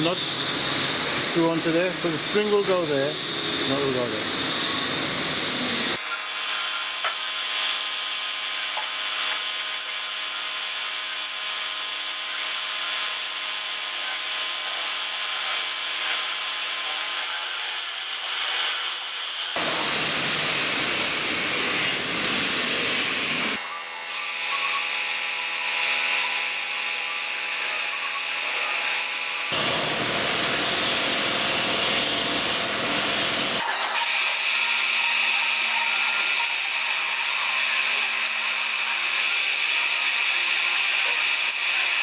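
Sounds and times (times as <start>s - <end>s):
lathe cutting metal scraping: 0.0s - 7.7s, 21.2s - 42.0s.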